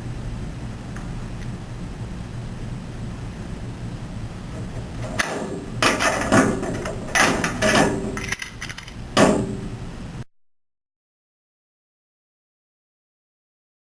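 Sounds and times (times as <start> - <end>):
padlock clacking and rattling: 5.8 - 9.0.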